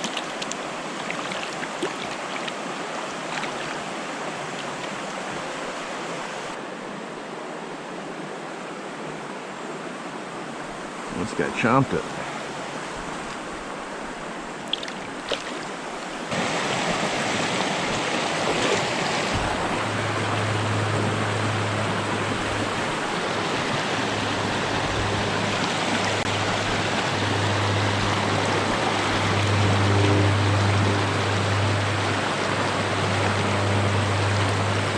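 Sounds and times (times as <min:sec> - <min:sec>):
creek water rushing: 0:00.0 - 0:34.9
low steady hum: 0:18.7 - 0:34.9.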